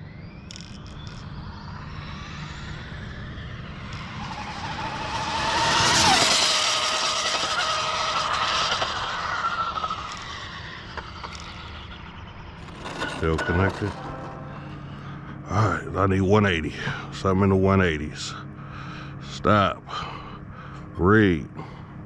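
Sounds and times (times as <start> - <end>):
rc car electric motor whining: 0.0 - 15.0.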